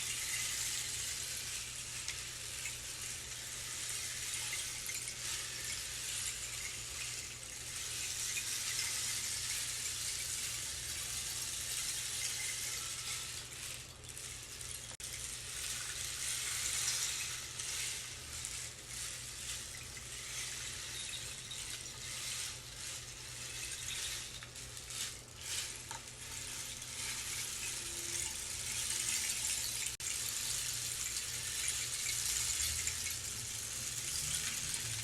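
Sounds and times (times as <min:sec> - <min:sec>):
rainstick pellets cascading: 0:00.0 - 0:35.0.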